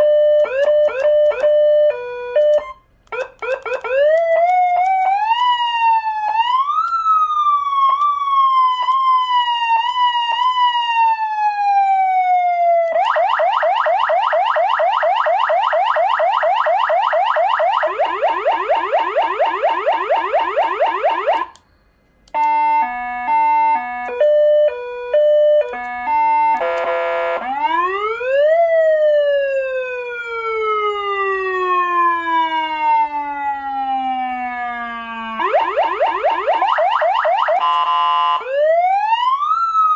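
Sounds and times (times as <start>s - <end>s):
electronic siren wail: 0.0s - 21.6s, 22.3s - 39.9s
fast siren yelp sweeps: 0.0s - 21.6s, 22.4s - 39.9s
stepped siren tones: 0.0s - 21.7s, 22.3s - 39.9s
buzzy horn tone: 25.9s - 27.6s.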